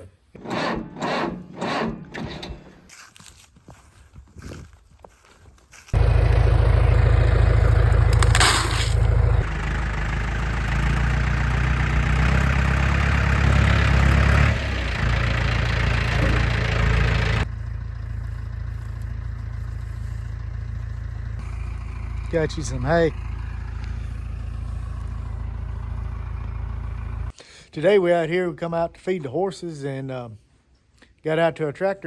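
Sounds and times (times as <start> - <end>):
tractor engine running: 5.9 - 27.3.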